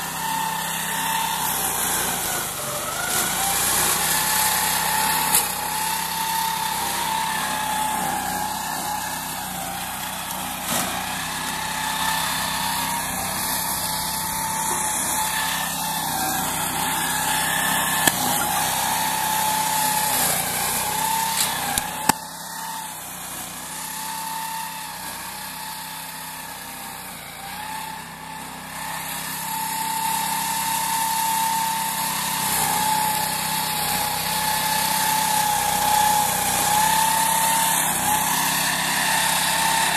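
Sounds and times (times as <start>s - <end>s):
mowing machine engine running: 0.0s - 39.9s.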